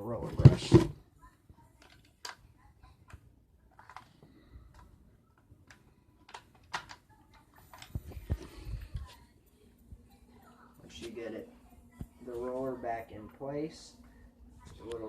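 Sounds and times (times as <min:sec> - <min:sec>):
plastic parts clicking: 0:03.7 - 0:08.0.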